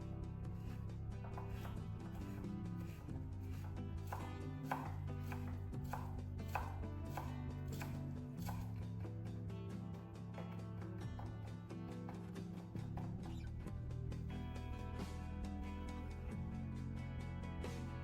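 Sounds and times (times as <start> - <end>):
background music: 0.0 - 18.0
knife chopping on cutting board: 0.6 - 8.8.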